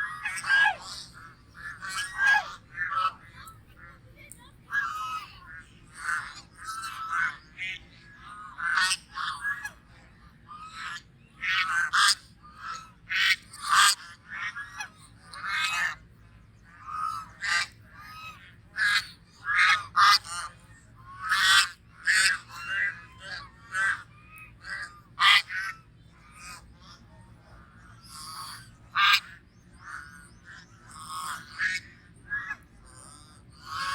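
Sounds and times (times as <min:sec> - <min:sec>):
geese honking: 0:00.0 - 0:16.0, 0:16.6 - 0:33.9.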